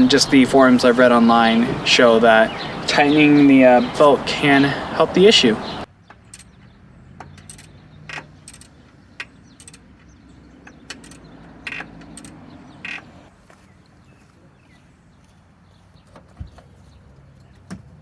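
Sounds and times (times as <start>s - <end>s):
metallic clicks of hand tools: 7.4s - 9.9s, 10.6s - 12.4s.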